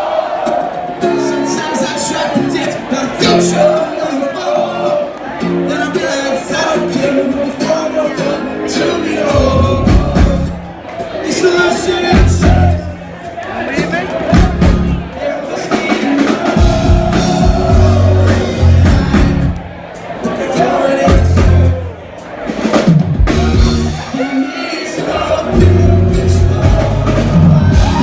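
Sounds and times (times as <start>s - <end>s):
live band playing: 0.5s - 28.0s
heavy drum and bass hits: 9.4s - 10.7s, 12.1s - 13.0s, 14.3s - 15.0s, 15.7s - 19.6s, 21.1s - 21.8s, 22.6s - 24.1s, 25.5s - 28.0s.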